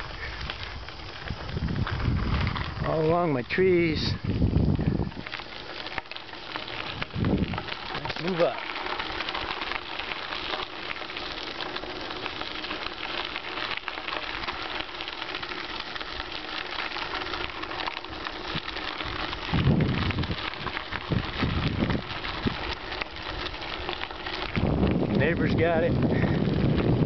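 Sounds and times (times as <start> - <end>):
wind buffeting microphone: 0.0 - 5.6, 6.7 - 9.3, 17.1 - 27.0
bicycle rolling on rough road: 0.0 - 27.0.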